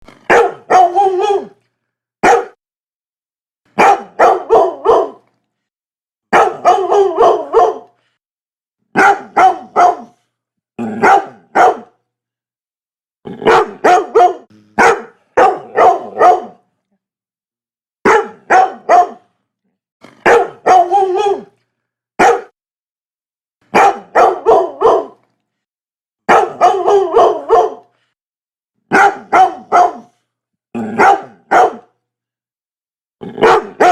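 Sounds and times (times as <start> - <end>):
dog barking: 0.3 - 1.6, 2.2 - 2.6, 3.8 - 5.3, 6.3 - 8.0, 8.9 - 10.2, 10.9 - 12.0, 13.4 - 16.6, 18.0 - 19.3, 20.2 - 21.5, 22.2 - 22.6, 23.7 - 25.2, 26.3 - 27.9, 28.9 - 30.2, 30.8 - 32.0, 33.3 - 33.9.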